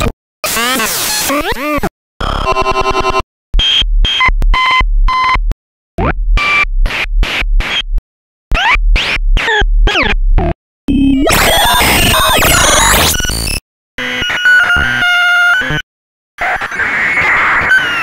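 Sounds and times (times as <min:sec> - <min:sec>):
dense noisy glitch: 0:10.9 - 0:13.6
stuttering digital chops: 0:10.9 - 0:13.6.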